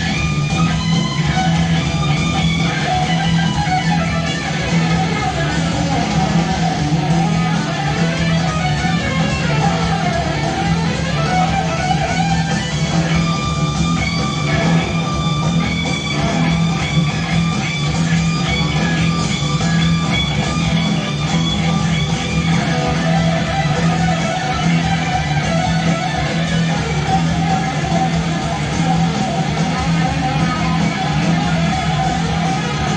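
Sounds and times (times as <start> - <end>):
electric guitar lines: 0.0 - 32.9.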